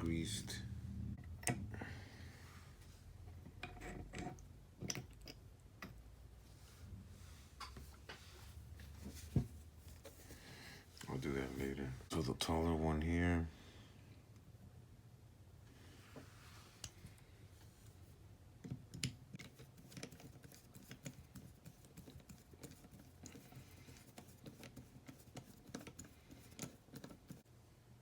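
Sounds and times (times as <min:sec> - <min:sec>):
ratchet parts clicking and tapping: 0:18.6 - 0:27.4.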